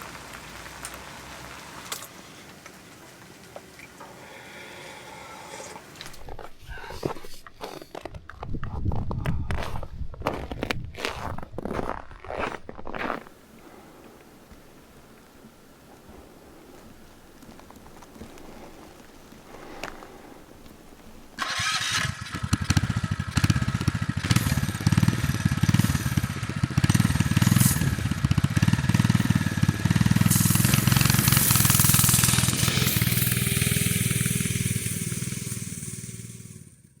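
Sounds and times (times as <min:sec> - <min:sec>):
engine running unevenly: 0:13.4 - 0:36.9.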